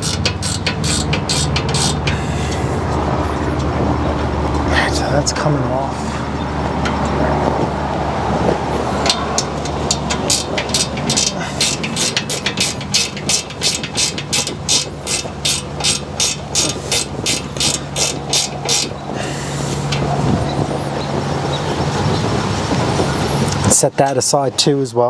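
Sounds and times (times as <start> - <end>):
ratchet wrench clicking: 0.0 - 3.8, 8.8 - 20.2.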